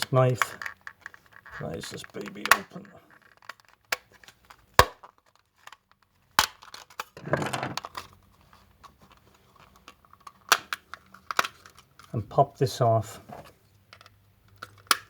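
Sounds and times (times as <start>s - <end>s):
knife scraping plastic: 7.2s - 8.0s
plastic clicks and snaps: 14.0s - 15.0s.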